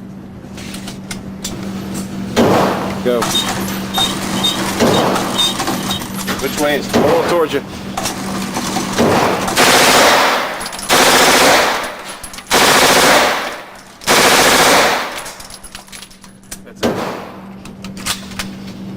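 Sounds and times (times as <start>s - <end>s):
submachine gun automatic bursts: 9.2s - 15.7s.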